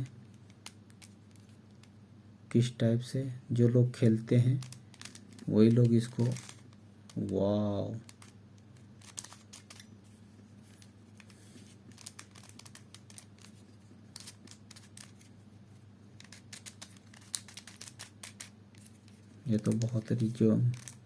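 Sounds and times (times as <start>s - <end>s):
puzzle cube plastic clicks: 0.3s - 1.9s, 4.4s - 9.9s, 10.7s - 15.3s, 16.2s - 21.0s.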